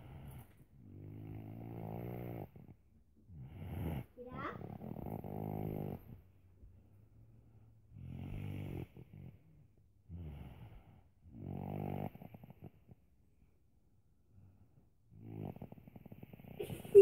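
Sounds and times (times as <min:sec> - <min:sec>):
boy snoring: 0:01.0 - 0:02.7, 0:03.4 - 0:06.2, 0:11.4 - 0:12.6, 0:15.2 - 0:17.0.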